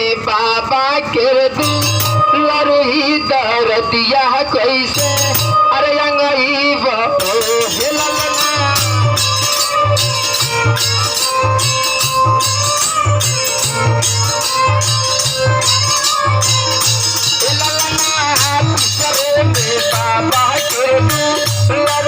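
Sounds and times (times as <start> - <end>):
folk melody instrument: 1.0 - 22.0
steady drum beat: 1.5 - 2.4, 4.9 - 5.7, 7.2 - 22.0
shaken jingling percussion: 1.5 - 22.0.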